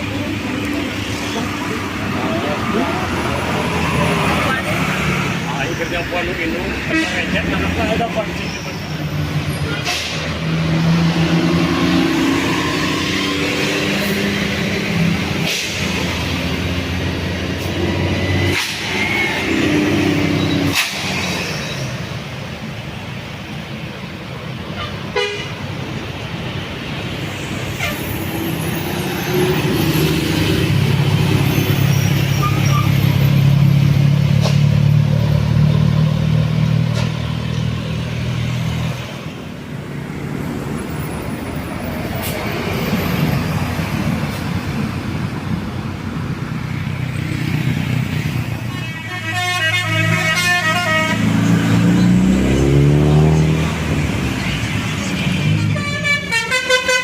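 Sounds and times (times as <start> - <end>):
bus engines passing: 0.0 - 57.0
engine revving up: 9.4 - 21.6, 51.1 - 55.6
multi-tone horn melody: 24.8 - 25.5, 48.8 - 51.6, 55.5 - 57.0.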